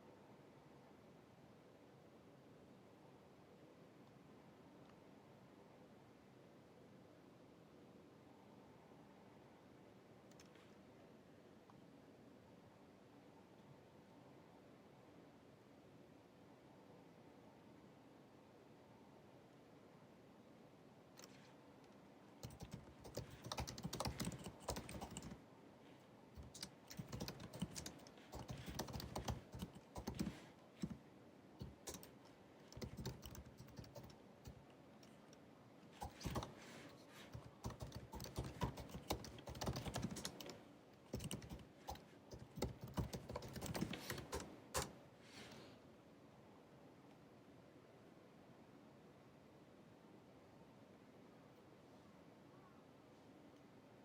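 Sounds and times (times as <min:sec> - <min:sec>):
laptop keyboard typing: 0:22.4 - 0:25.4, 0:26.4 - 0:31.0, 0:31.6 - 0:34.6, 0:36.0 - 0:45.0.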